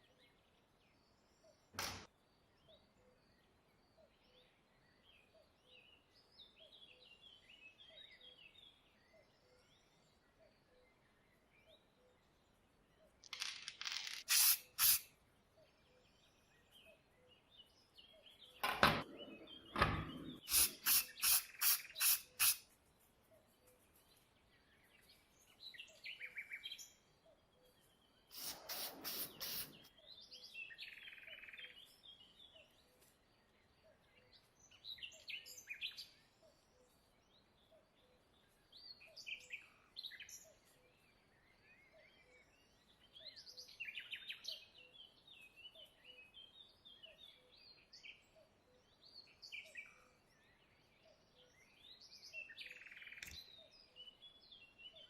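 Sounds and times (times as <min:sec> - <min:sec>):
birds chirping: 0:04.2 - 0:22.7, 0:23.4 - 0:32.8
short sharp strokes: 0:20.4 - 0:22.6, 0:28.4 - 0:29.9.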